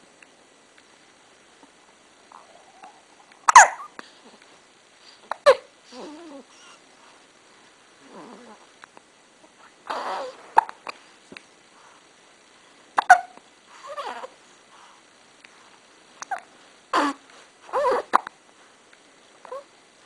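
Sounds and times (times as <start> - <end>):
baby hiccuping: 3.5 - 3.9, 13.0 - 13.4.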